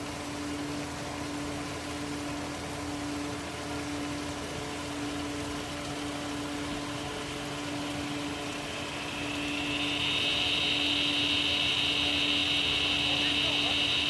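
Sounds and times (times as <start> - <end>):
steady low hum: 0.0 - 14.0
high even drone: 6.7 - 14.0
background hiss: 7.7 - 14.0.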